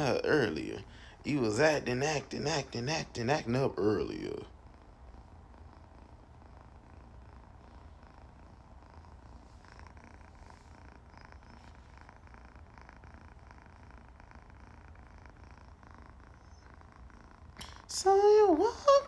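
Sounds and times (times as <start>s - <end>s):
cat purring: 0.0s - 19.0s.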